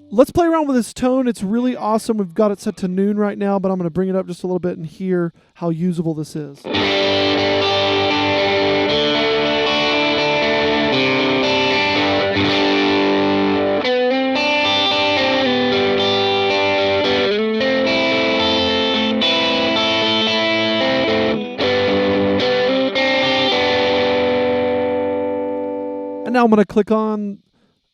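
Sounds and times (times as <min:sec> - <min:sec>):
overdriven electric guitar: 0:06.6 - 0:26.3.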